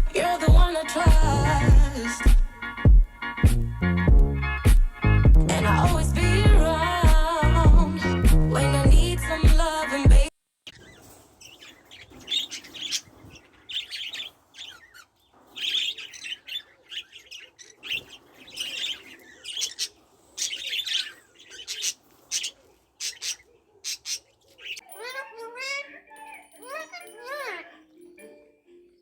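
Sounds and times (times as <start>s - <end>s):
parrots chirping and calling: 10.7s - 28.2s.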